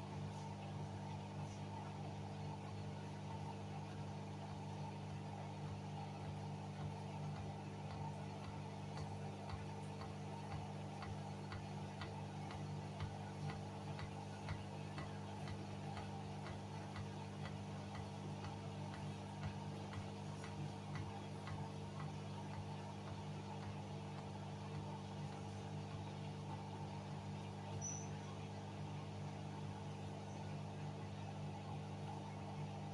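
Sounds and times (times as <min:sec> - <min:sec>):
washing machine humming: 0:00.2 - 0:32.9
light ticking: 0:06.8 - 0:25.5.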